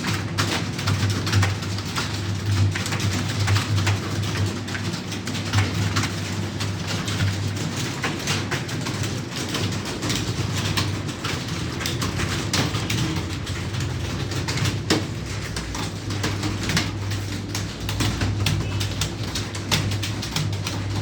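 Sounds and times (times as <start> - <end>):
computer keyboards clicking: 0.0 - 21.0.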